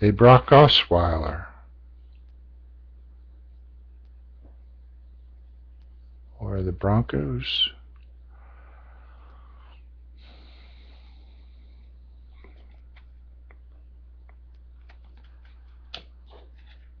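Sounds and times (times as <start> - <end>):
steady low hum: 0.0 - 17.0
trading cards shuffled: 12.4 - 13.7, 14.6 - 17.0.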